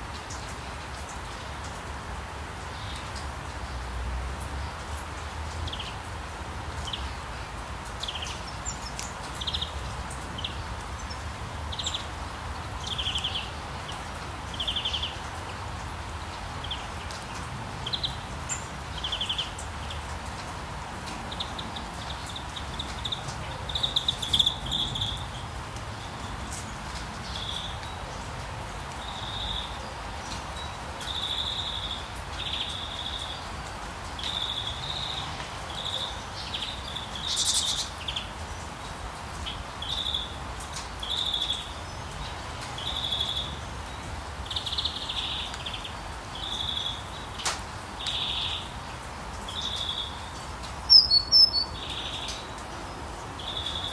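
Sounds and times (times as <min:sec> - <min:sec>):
rain hissing in forest: 0:00.0 - 0:53.9
bird chirping: 0:21.3 - 0:25.4, 0:35.8 - 0:38.2, 0:50.9 - 0:52.5.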